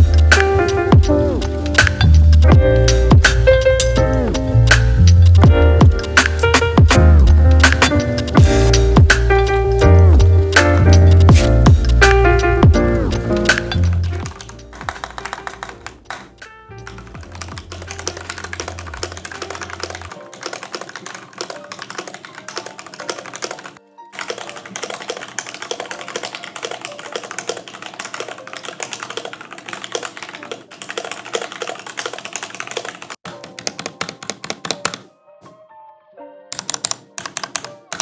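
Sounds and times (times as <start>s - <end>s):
mechanical keyboard typing: 13.4s - 35.1s, 36.5s - 38.0s.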